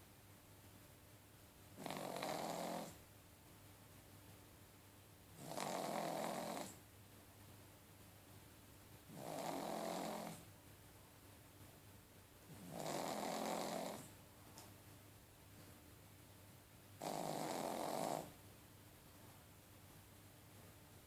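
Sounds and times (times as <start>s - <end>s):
dog snoring: 1.8s - 3.0s, 5.4s - 6.8s, 9.1s - 10.5s, 12.5s - 14.1s, 17.0s - 18.4s.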